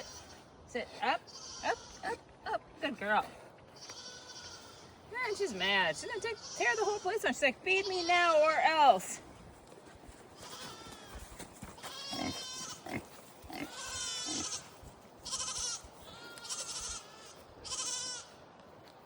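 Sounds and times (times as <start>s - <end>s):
livestock high-pitched cries: 0.0s - 0.5s, 1.2s - 2.2s, 3.8s - 8.7s, 10.4s - 18.4s.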